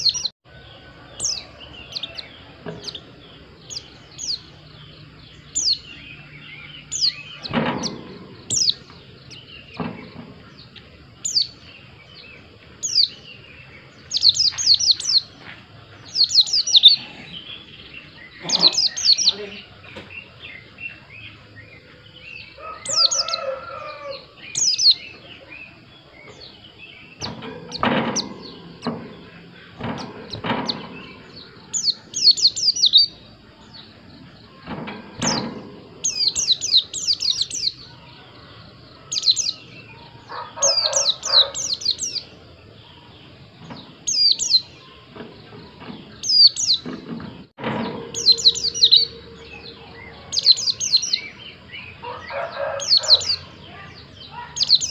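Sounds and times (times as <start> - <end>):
dull knocks: 27.2 - 31.7
bird chirping high and thin: 48.1 - 51.4.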